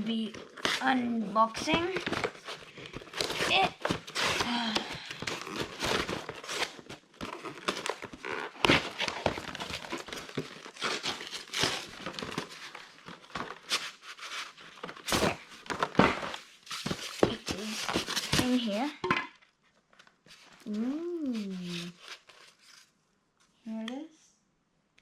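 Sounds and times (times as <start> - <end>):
packaging crinkling and tearing: 0.0 - 18.9.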